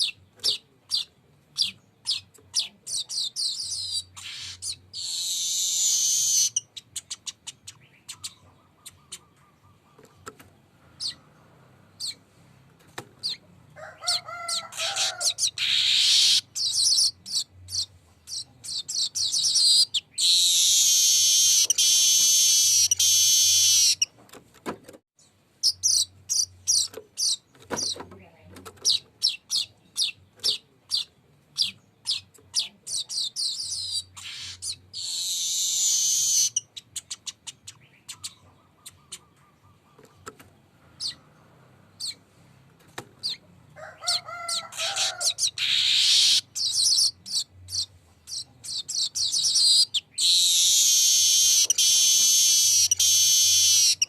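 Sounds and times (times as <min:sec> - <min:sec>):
bird buzzy trills: 0:03.0 - 0:10.1, 0:18.9 - 0:24.1, 0:33.2 - 0:38.3, 0:44.1 - 0:54.0.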